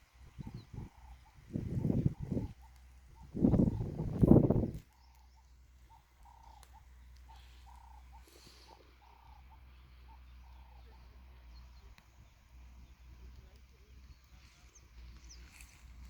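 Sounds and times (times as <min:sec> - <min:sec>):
faint short bird calls: 0:00.0 - 0:16.0.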